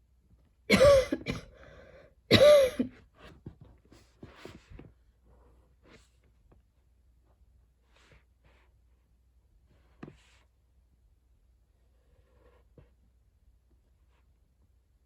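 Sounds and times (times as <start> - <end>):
woman coughing: 0.7 - 1.6, 2.3 - 2.9
heavy breathing: 0.8 - 2.2.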